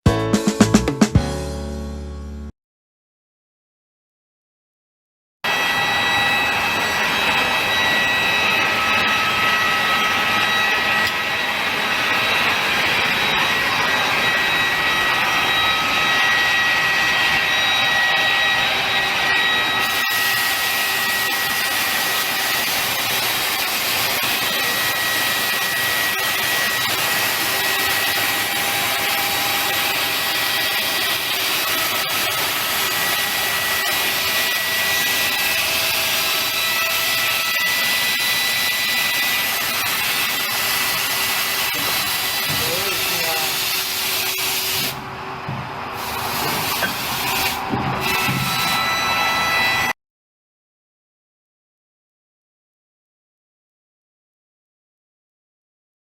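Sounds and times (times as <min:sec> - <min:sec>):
saw machine cutting metal: 0:05.4 - 0:50.0
high whining tones: 0:05.5 - 0:50.0.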